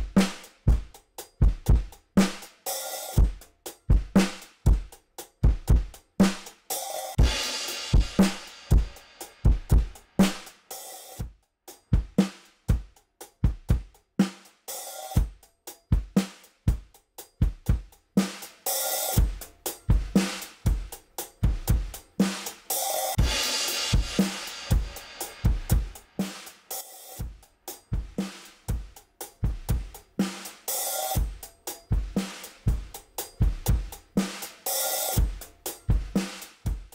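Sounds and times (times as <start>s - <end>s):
drum kit groove: 0.0s - 36.9s.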